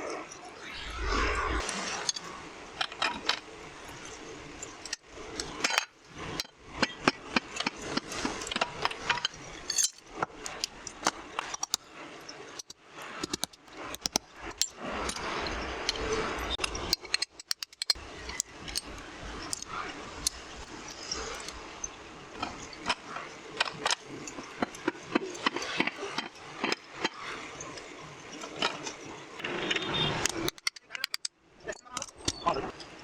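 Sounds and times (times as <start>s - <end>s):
metallic clinks of hand tools: 9.1s - 10.1s.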